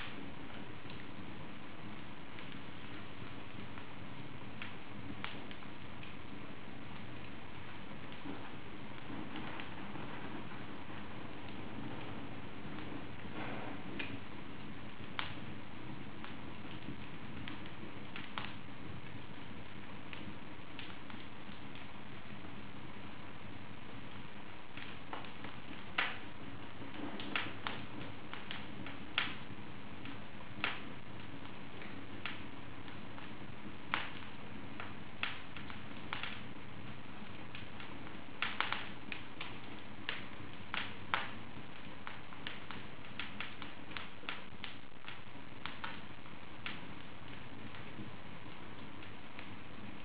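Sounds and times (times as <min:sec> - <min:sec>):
low hiss of fire: 0:00.0 - 0:50.0
wood fire crackling and popping: 0:00.0 - 0:50.0.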